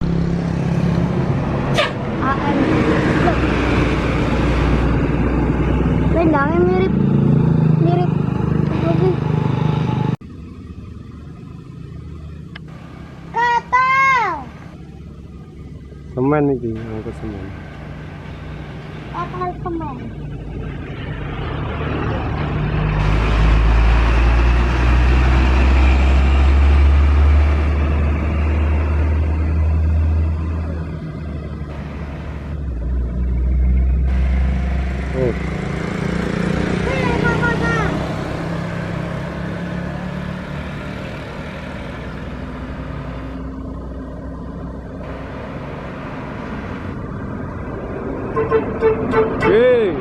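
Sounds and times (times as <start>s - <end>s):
bus engine running: 0.0s - 50.0s
heavy truck driving past: 0.0s - 50.0s.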